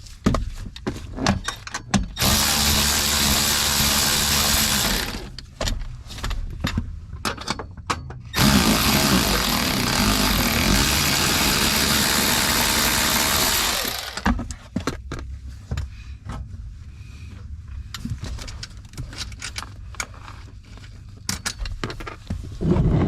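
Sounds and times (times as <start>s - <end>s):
power drill running: 2.2s - 5.4s, 8.4s - 14.3s.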